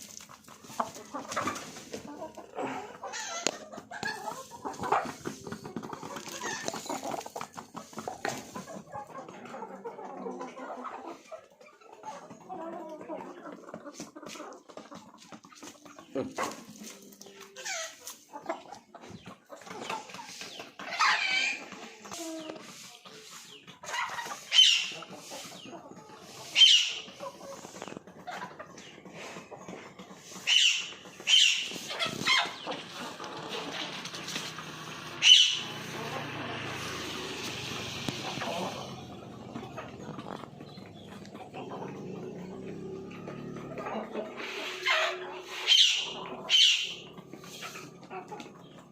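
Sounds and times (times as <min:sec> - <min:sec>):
chickens clucking: 0:00.0 - 0:48.9
high-pitched chicken squawks: 0:20.8 - 0:22.3, 0:23.9 - 0:25.1, 0:26.4 - 0:27.2, 0:30.4 - 0:32.8, 0:35.1 - 0:35.8, 0:44.4 - 0:47.9.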